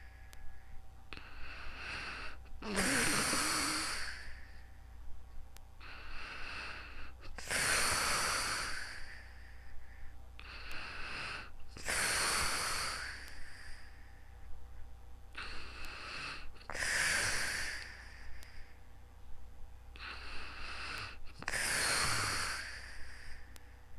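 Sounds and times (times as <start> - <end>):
person breathing heavily in sleep: 0.0 - 4.8, 5.8 - 14.5, 15.3 - 18.9, 19.9 - 23.9
low steady hum: 0.0 - 23.9.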